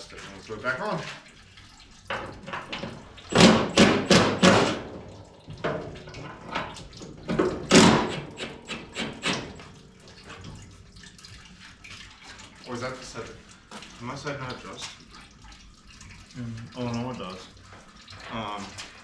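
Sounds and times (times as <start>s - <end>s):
knocks and clunks on metal: 2.1s - 9.7s.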